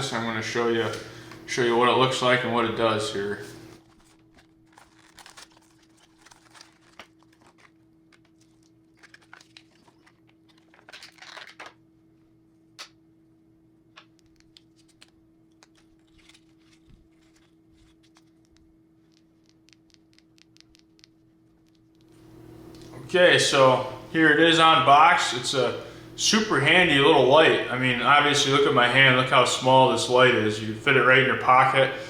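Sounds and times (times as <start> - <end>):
faint steady hum: 0.0 - 32.0
packaging rustling and tearing: 3.8 - 11.8, 14.2 - 18.6
small clicks and taps: 14.0 - 15.9, 18.3 - 22.9.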